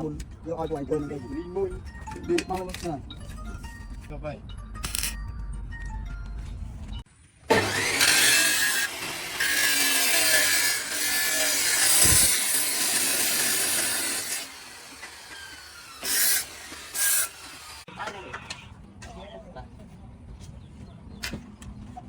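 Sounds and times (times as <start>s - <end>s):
power tool cutting steel: 7.5s - 17.9s.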